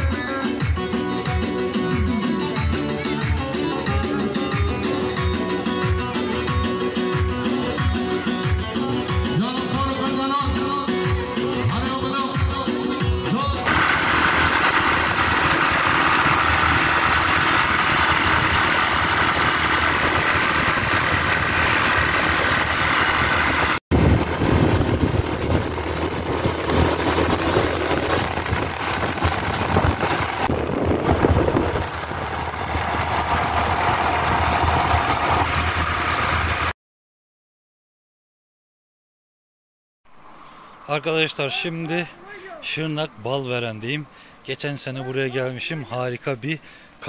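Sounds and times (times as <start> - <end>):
motorcycle engine running: 13.7 - 36.7
steady rushing noise: 13.7 - 36.7.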